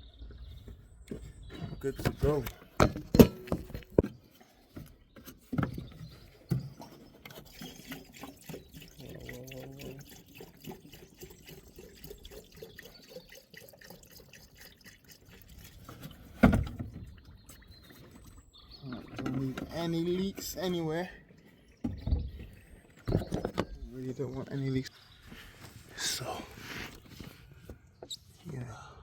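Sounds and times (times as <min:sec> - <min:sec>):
liquid pouring and trickling: 0:06.7 - 0:23.6.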